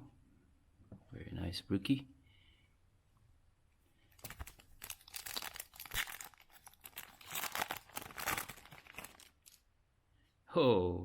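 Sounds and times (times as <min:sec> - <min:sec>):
foil wrapper crinkling: 0:04.2 - 0:09.6.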